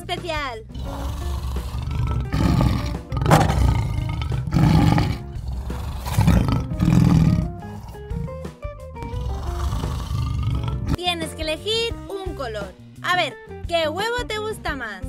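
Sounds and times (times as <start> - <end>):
light background music: 0.0 - 15.0
dinosaur roaring: 0.7 - 11.0.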